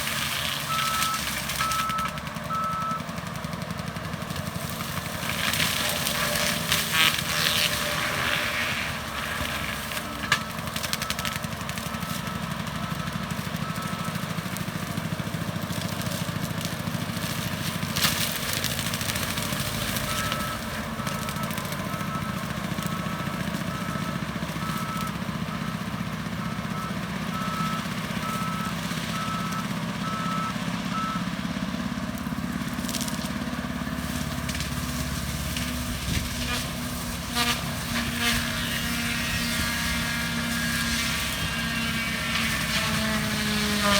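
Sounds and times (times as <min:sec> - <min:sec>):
skid steer running with mulcher: 0:00.0 - 0:43.9
reversing alarm beeping: 0:00.7 - 0:03.0, 0:10.4 - 0:14.4, 0:19.8 - 0:31.4.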